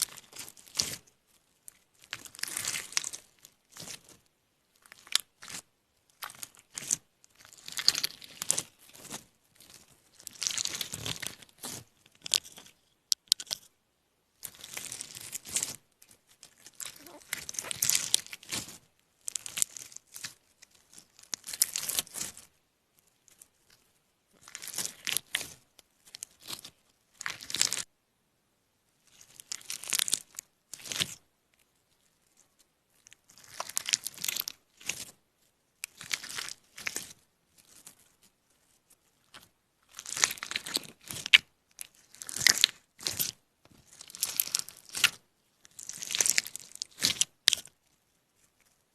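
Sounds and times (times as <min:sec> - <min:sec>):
crinkling and tearing: 0:14.4 - 0:22.5, 0:33.0 - 0:35.2, 0:38.6 - 0:48.8.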